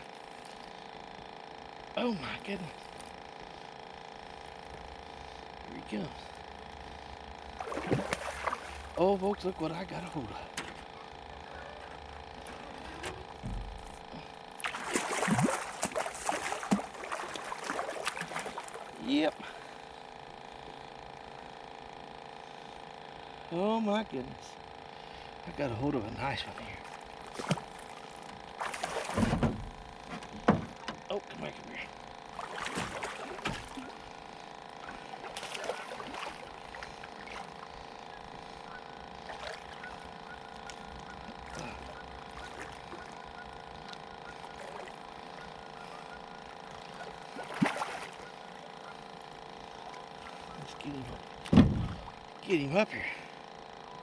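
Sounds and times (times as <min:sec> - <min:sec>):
steady hum: 0:00.0 - 0:54.0
fish thrashing and splashing: 0:07.6 - 0:09.0, 0:12.4 - 0:19.0, 0:26.8 - 0:29.5, 0:32.3 - 0:34.1, 0:34.8 - 0:37.8, 0:39.2 - 0:43.3, 0:46.8 - 0:48.6.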